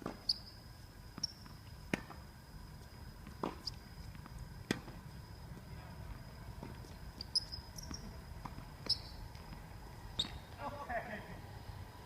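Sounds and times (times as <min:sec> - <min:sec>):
low background hum: 0:00.0 - 0:12.0.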